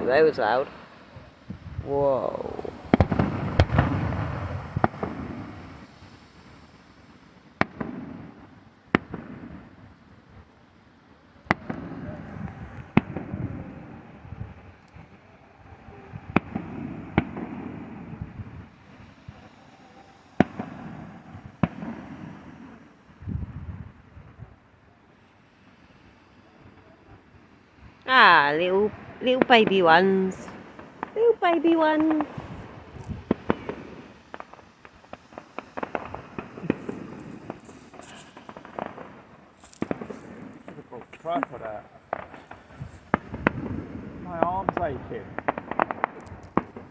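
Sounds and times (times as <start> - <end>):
fireworks bangs: 0.0 - 6.6, 7.2 - 10.6, 11.2 - 24.2, 28.1 - 46.9
low rolling echo: 11.3 - 23.2.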